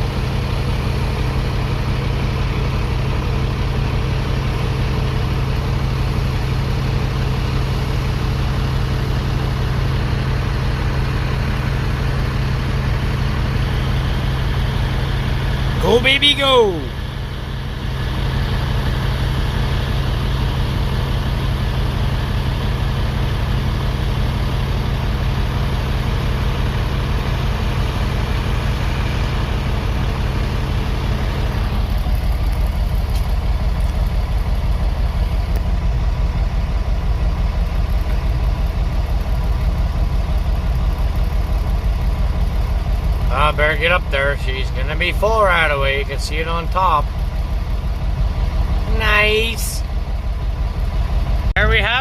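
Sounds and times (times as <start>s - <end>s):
combine harvester engine drone: 0.0s - 52.0s
machinery noise: 15.7s - 17.1s.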